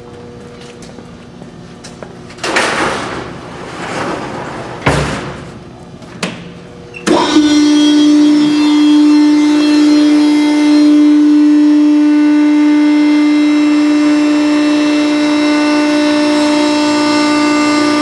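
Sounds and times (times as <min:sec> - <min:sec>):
metal clanks and bang: 0:02.4 - 0:06.5
hydraulic power pack humming: 0:04.8 - 0:18.0.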